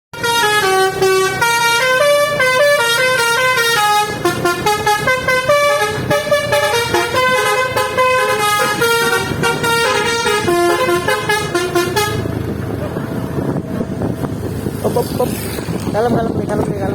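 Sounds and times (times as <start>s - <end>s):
musical air horn melody: 0.2s - 12.3s.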